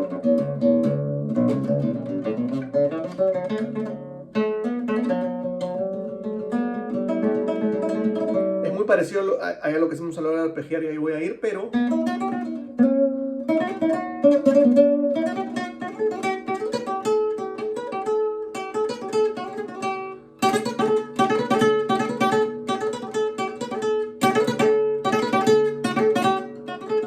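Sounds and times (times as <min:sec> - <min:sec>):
fingerstyle acoustic guitar: 0:00.0 - 0:09.4, 0:10.0 - 0:27.0.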